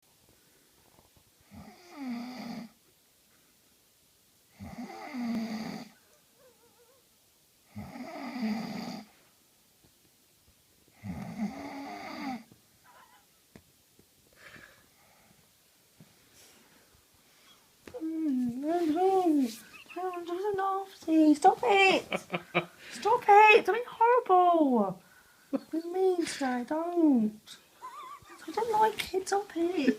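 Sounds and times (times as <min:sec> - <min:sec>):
woman snoring loudly: 0:01.5 - 0:02.7, 0:04.6 - 0:06.0, 0:07.7 - 0:09.1, 0:11.0 - 0:12.5.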